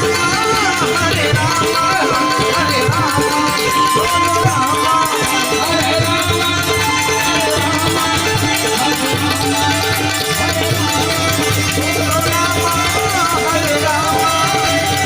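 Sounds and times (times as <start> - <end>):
repeating drum rhythm: 0.0 - 15.0.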